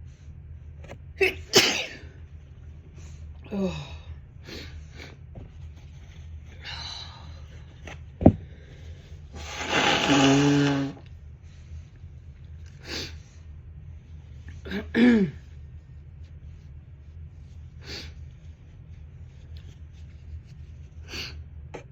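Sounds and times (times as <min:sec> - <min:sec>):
sniffs: 0:08.8 - 0:11.1
person blowing nose: 0:09.4 - 0:11.1.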